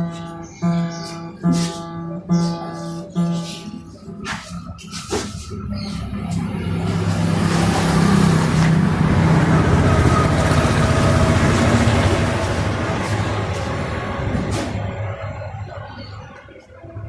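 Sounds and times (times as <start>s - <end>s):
vehicle passing close by: 5.5s - 15.6s.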